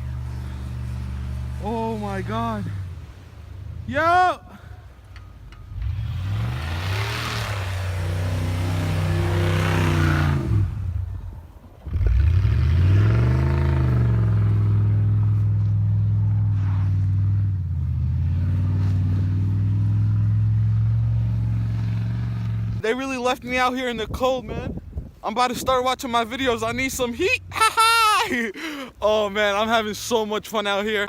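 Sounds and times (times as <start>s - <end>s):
car engine revving: 0.0s - 4.0s, 5.6s - 22.8s.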